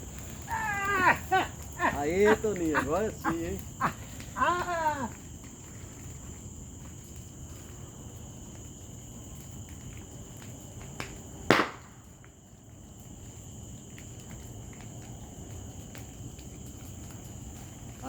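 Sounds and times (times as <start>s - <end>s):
crickets chirping: 0.0s - 18.0s
firecracker bang: 11.5s - 12.0s.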